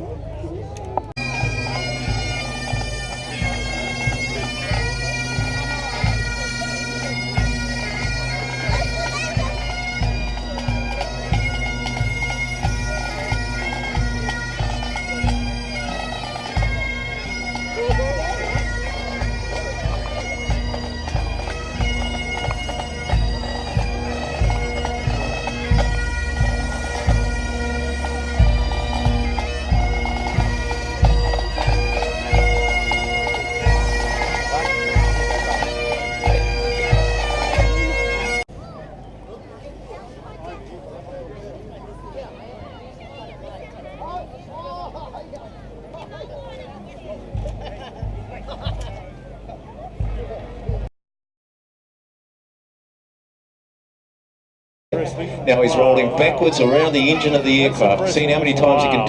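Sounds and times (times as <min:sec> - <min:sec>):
bagpipes playing a tune: 0:01.2 - 0:38.5, 0:55.0 - 0:59.0
low drum beat: 0:16.2 - 0:38.2.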